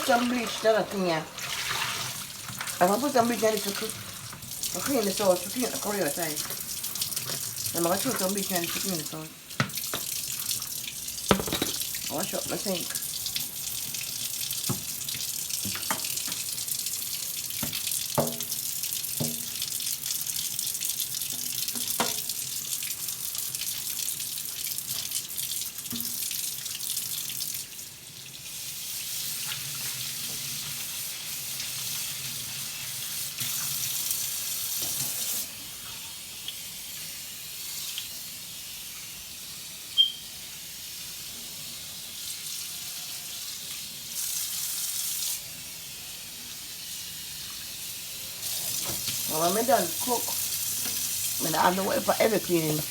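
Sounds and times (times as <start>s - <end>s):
tap running into a sink: 9.6s - 12.7s, 14.6s - 16.5s, 17.6s - 19.7s, 21.3s - 22.4s
knocks of pots or dishes: 11.3s - 12.0s, 17.6s - 18.5s, 19.2s - 19.5s.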